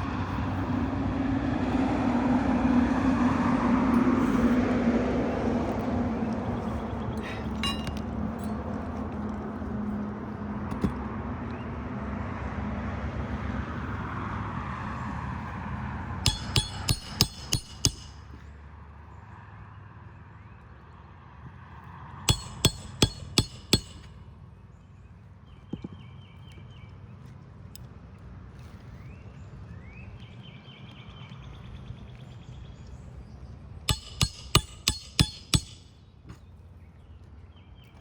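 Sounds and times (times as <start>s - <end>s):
hammer striking roofing nails: 16.3s - 18.3s, 22.3s - 24.1s, 33.9s - 36.0s.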